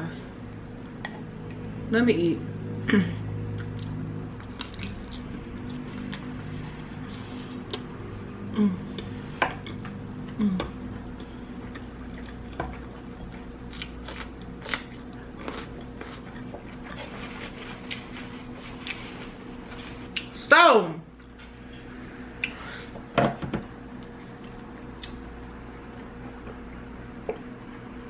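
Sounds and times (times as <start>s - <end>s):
person chewing food: 3.5s - 8.2s, 8.8s - 20.3s, 23.9s - 26.6s.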